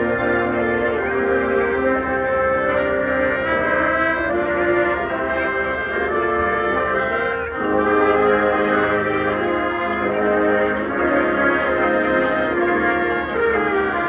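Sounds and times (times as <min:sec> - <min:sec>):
marching band brass chords: 0:00.0 - 0:14.0.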